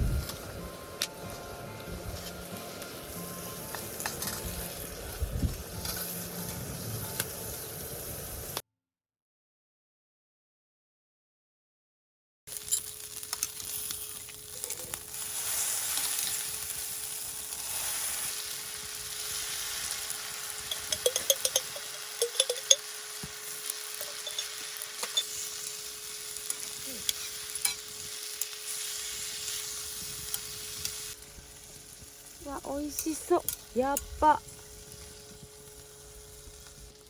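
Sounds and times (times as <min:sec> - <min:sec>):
food sizzling in a pan: 0:00.0 - 0:08.6, 0:12.5 - 0:37.0
utensil clicking against pan: 0:20.7 - 0:22.8.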